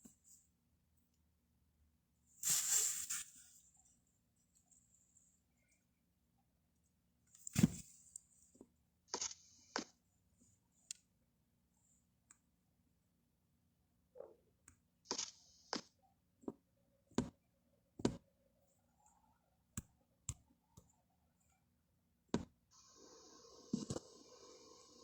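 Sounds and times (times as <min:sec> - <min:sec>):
steady hiss: 0:22.8 - 0:25.0.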